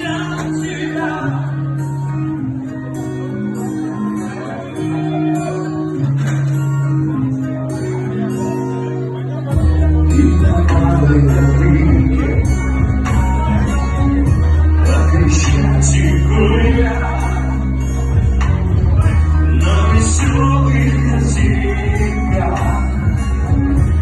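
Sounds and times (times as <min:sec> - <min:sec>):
person singing: 0:00.0 - 0:02.8, 0:09.5 - 0:24.0
acoustic guitar: 0:00.0 - 0:24.0
deep bass notes: 0:09.5 - 0:24.0.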